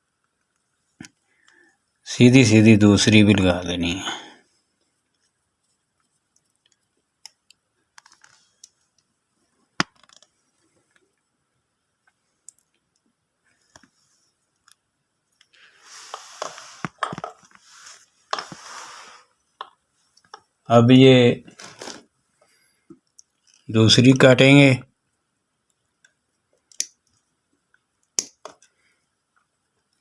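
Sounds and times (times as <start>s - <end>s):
plastic connector clicks and taps: 28.2s - 28.6s.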